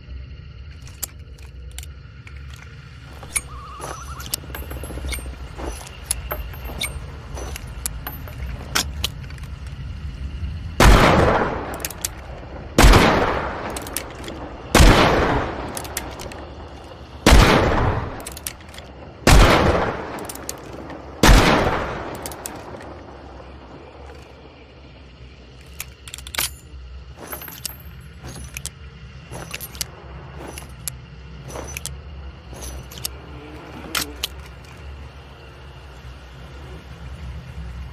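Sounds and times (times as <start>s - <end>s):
metallic gun handling clicks: 0.8s - 9.8s, 11.6s - 12.4s, 13.6s - 14.4s, 15.2s - 16.9s, 17.7s - 19.0s, 20.1s - 22.9s, 25.4s - 33.2s, 33.8s - 34.9s.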